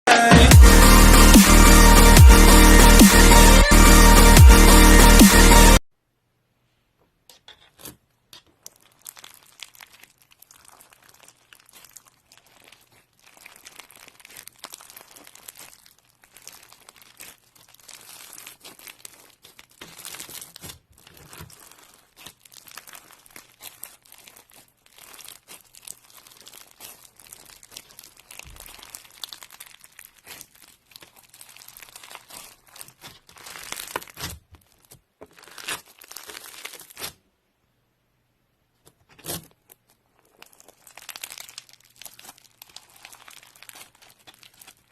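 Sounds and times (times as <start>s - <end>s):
slime crackling and popping: 7.6s - 37.2s, 38.9s - 44.9s.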